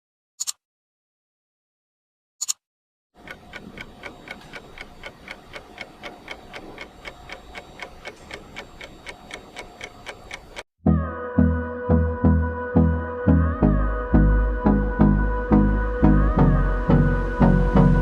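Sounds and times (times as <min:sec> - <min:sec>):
clock-like ticking: 0:03.2 - 0:10.7.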